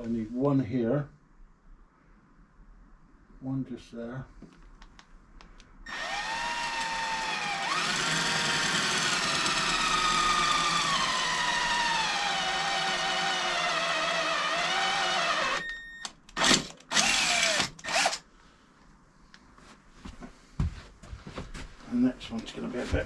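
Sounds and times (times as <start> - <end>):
power drill whining: 5.9 - 18.2.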